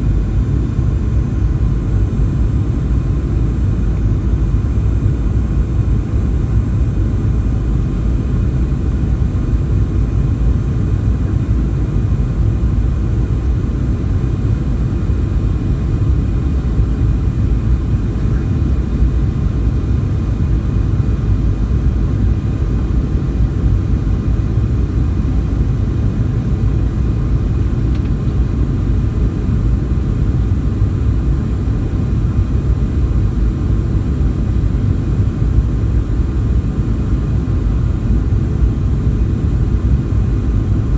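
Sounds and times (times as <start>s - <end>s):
jet engines rumbling: 0.0s - 32.0s
faint jet engine tones: 0.0s - 40.9s.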